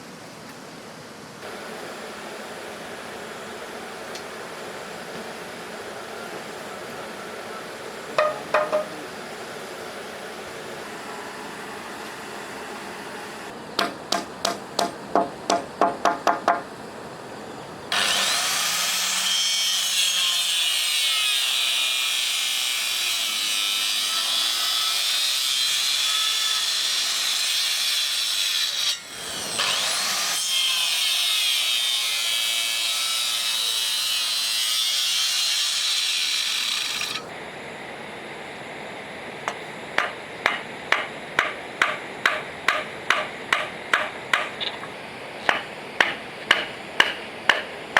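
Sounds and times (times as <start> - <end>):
hammer nailing wood: 8.2 - 8.9, 13.8 - 16.7, 39.5 - 44.8, 45.4 - 47.8
power saw cutting wood: 17.9 - 37.3.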